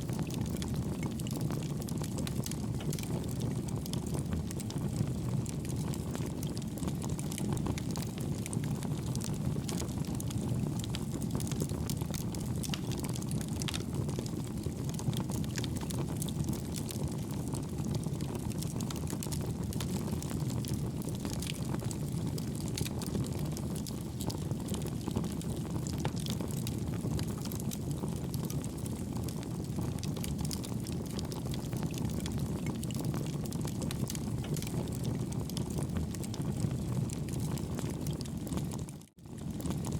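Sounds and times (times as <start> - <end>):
low roar of stove draft: 0.0 - 39.9
burning wood crackling: 30.3 - 38.8.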